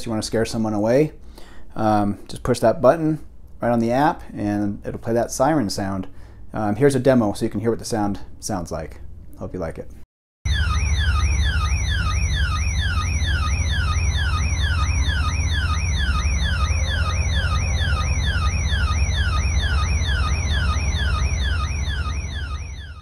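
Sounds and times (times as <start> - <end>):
electronic siren whooping: 10.5 - 23.0
low hum: 10.5 - 23.0.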